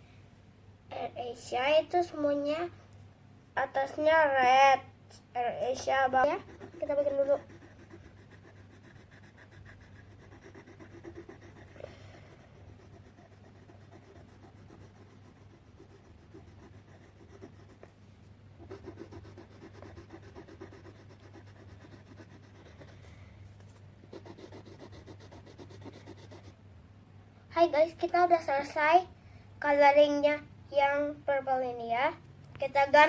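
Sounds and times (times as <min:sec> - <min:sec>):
pencil scratching on paper: 0:06.2 - 0:17.9, 0:18.6 - 0:23.0, 0:24.1 - 0:26.6.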